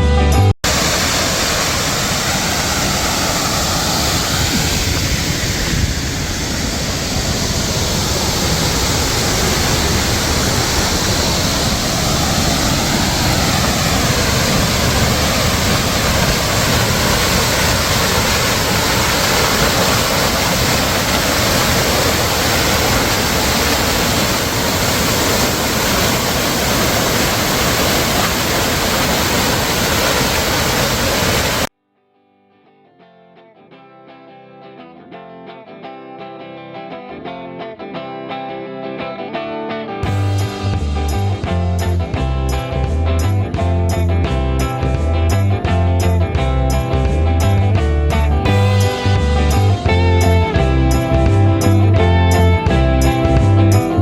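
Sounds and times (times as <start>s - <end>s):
water rushing over waterfall: 0.6s - 31.7s.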